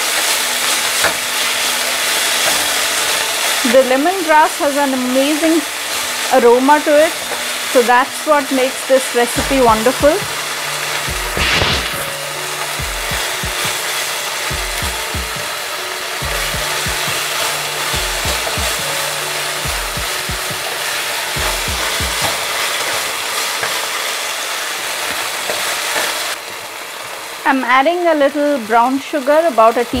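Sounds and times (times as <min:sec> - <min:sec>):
background music: 0:00.0 - 0:23.4
food sizzling in oil: 0:00.0 - 0:30.0.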